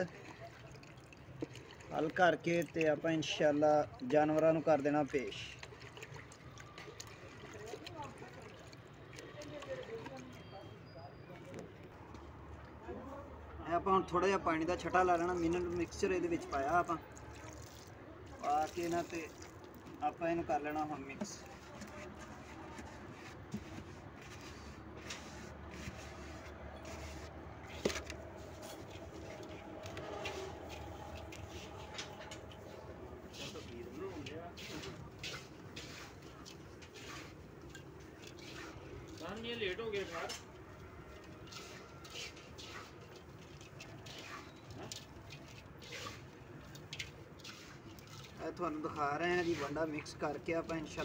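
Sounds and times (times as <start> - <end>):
damp feed rustling and scraping: 21.2 - 37.4.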